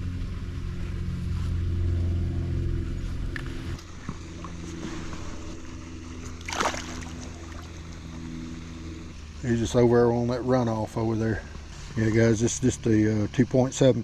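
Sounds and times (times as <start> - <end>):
steady motor hum: 0.0 - 14.0.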